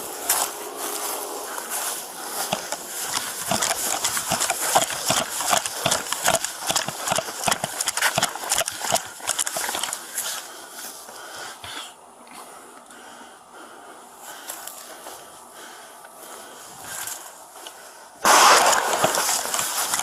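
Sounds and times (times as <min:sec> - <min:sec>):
hurried footsteps: 0:00.0 - 0:11.2, 0:16.1 - 0:20.0
gear rubbing and knocking: 0:02.5 - 0:10.1, 0:18.3 - 0:20.0.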